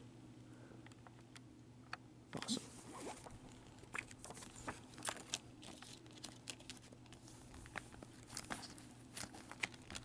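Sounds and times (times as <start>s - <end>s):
plastic crinkling: 3.0s - 10.0s.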